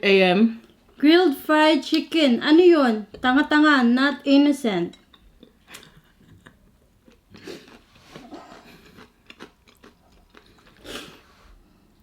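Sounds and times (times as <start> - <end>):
chewing crispy fried chicken: 7.0 - 11.2.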